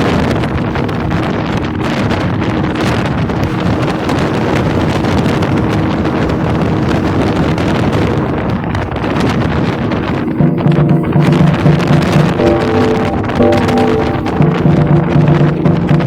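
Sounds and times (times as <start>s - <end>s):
wind buffeting microphone: 0.0s - 12.4s.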